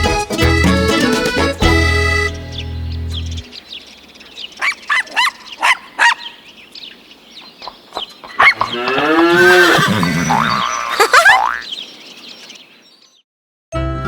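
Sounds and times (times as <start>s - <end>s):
accordion music: 0.0s - 3.5s
short rising bird calls: 3.2s - 13.1s
cow mooing: 8.4s - 10.9s.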